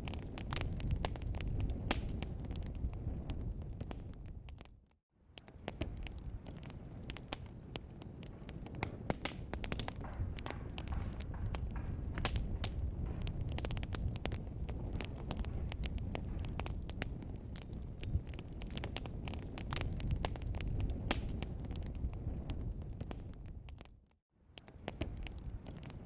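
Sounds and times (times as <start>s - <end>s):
fire crackling and popping: 0.0s - 26.0s
low rumble of flames: 0.0s - 26.0s.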